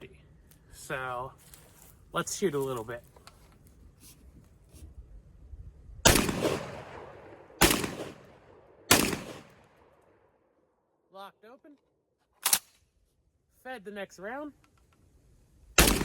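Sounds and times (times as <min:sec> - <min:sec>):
shotgun shots echoing: 0:06.1 - 0:10.0, 0:15.8 - 0:16.0.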